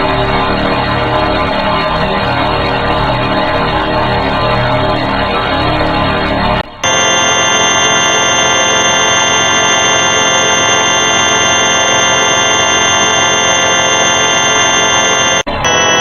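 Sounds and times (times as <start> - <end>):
electronic drone: 6.6 - 16.0.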